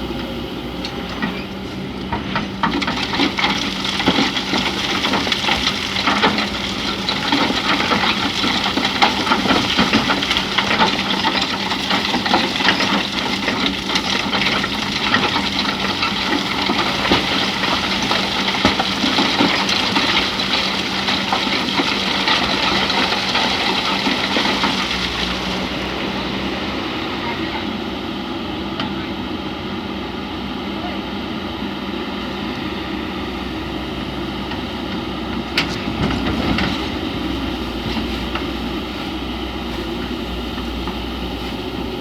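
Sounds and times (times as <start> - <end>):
excavator diesel engine hum: 0.0 - 42.0
sand and stones clattering: 2.6 - 26.0.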